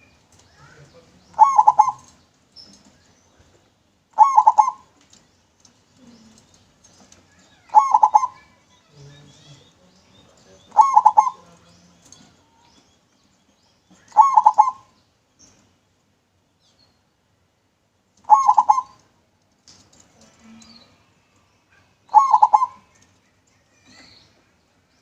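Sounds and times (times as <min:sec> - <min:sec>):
dove cooing: 0:01.3 - 0:02.2, 0:04.2 - 0:05.0, 0:07.6 - 0:08.5, 0:10.7 - 0:11.6, 0:14.0 - 0:15.0, 0:18.2 - 0:19.1, 0:22.1 - 0:23.0.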